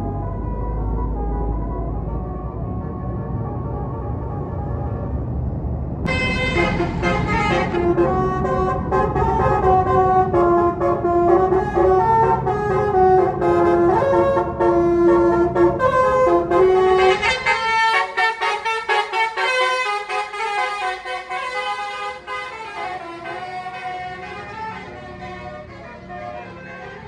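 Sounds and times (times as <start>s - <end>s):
bus engine running: 0.0s - 27.0s
musical air horn melody: 6.1s - 27.0s.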